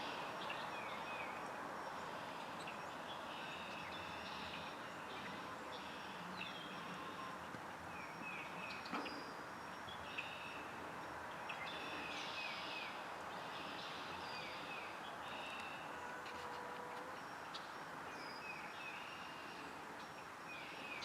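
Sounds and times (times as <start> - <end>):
steady outdoor hiss: 0.0 - 21.0
wild birds chirping: 0.0 - 21.0.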